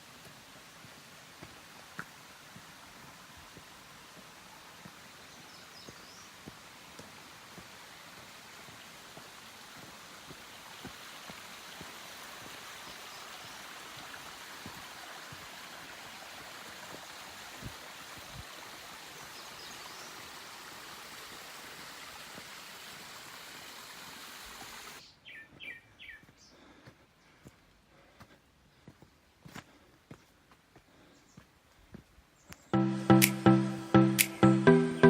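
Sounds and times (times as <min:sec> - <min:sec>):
forest stream rushing: 0:00.0 - 0:25.0
bird chirping: 0:25.0 - 0:26.6
bird calls: 0:25.0 - 0:26.7.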